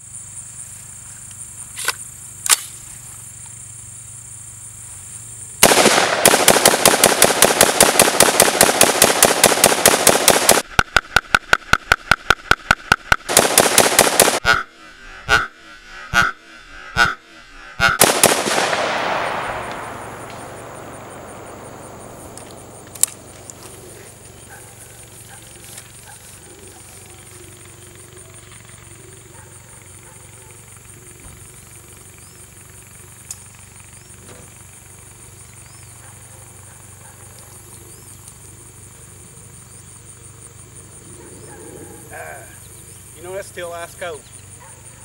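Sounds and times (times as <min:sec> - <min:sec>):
gunshot echo: 0:05.6 - 0:10.6, 0:13.3 - 0:14.4, 0:17.9 - 0:24.2
rifle firing rapidly: 0:05.6 - 0:10.7, 0:13.3 - 0:14.4, 0:18.0 - 0:23.3.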